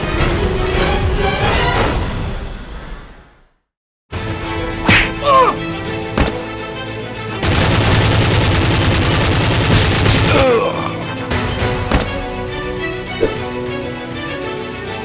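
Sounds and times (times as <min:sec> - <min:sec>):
background music: 0:00.0 - 0:02.8, 0:04.1 - 0:15.0
rapid machine-gun fire: 0:07.4 - 0:10.4.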